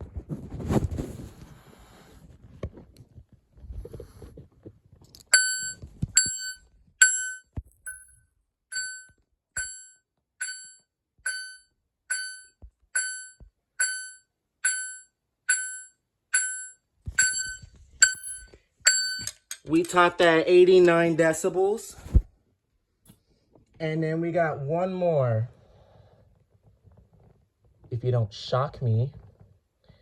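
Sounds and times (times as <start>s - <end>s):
fire alarm ringing pulses: 5.3s - 8.1s, 8.7s - 19.4s.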